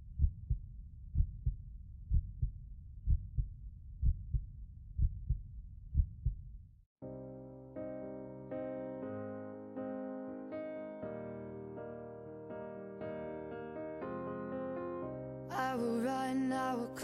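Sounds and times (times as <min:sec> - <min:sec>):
heartbeat thumps: 0:00.0 - 0:06.6
electric piano music: 0:07.0 - 0:17.0.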